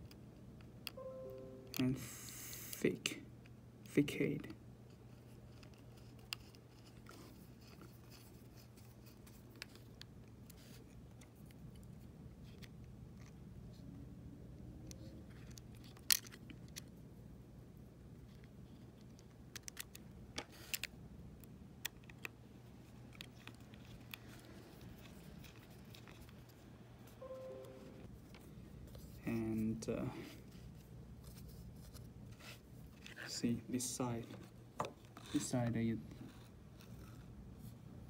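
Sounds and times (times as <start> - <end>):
faint steady hum: 0.0 - 38.0.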